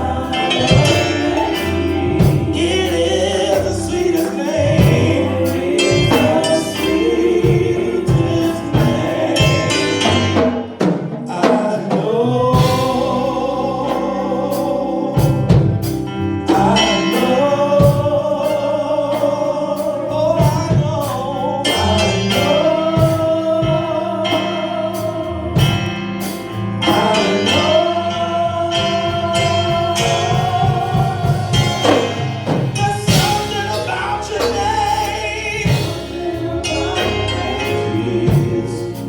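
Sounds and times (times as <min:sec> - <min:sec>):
drum and cymbal hits: 0:00.0 - 0:13.4, 0:29.4 - 0:39.0
church band playing: 0:00.0 - 0:39.0
gospel choir singing: 0:00.0 - 0:39.0.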